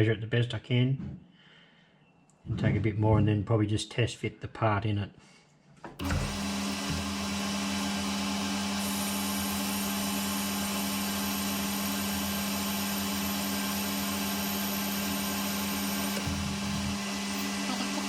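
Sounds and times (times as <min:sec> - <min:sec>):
machine tool humming: 0:06.0 - 0:18.0.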